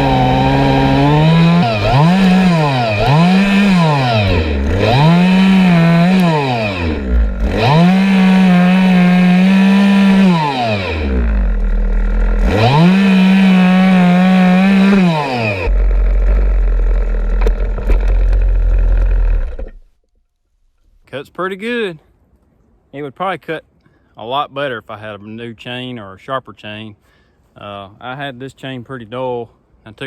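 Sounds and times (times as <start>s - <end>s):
chainsaw cutting wood: 0.0s - 20.0s.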